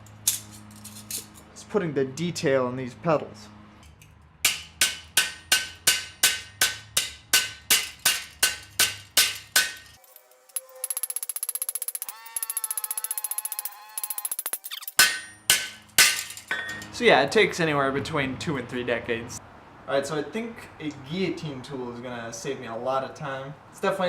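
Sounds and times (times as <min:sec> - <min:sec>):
hammer striking steel on anvil: 0:04.4 - 0:16.9.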